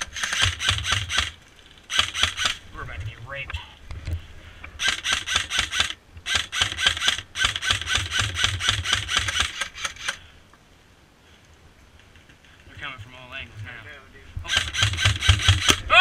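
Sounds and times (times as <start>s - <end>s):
airsoft gun firing: 0.0s - 2.6s, 4.8s - 10.2s, 14.5s - 15.8s.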